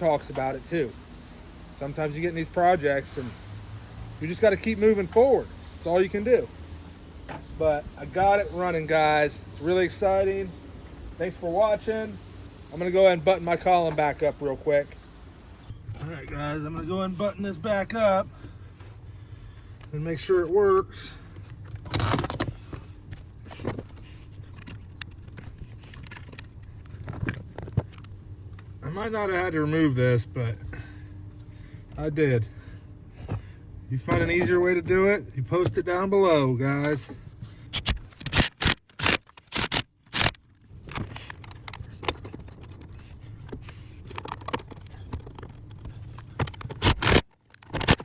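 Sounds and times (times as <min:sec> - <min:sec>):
tools clicking and scraping on trim: 0:21.3 - 0:28.8, 0:36.8 - 0:48.0.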